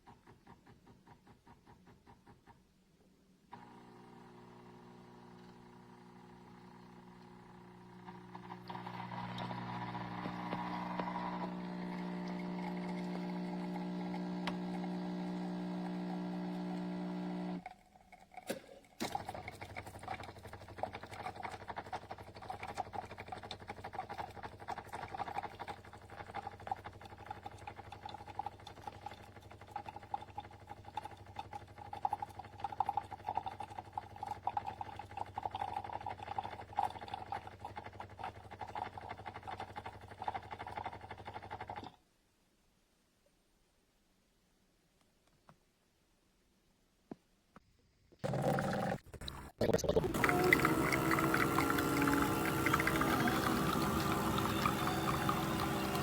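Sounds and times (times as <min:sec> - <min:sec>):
espresso machine motor hum: 0:03.5 - 0:17.6, 0:50.0 - 0:56.0.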